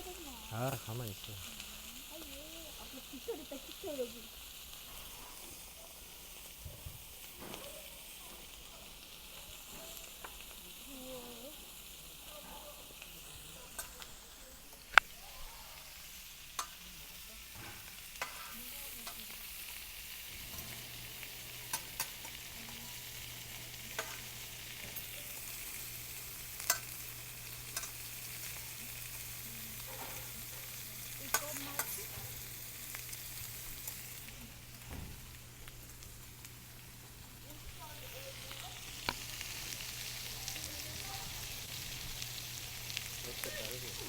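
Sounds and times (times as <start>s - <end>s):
pork sizzling on a griddle: 0.0s - 44.0s
sharp clicks and pops: 39.0s - 39.3s.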